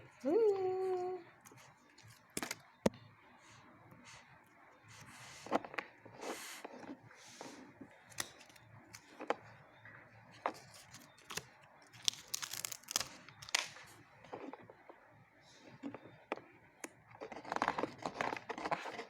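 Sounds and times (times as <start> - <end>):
rustling and crinkling: 4.9 - 19.0.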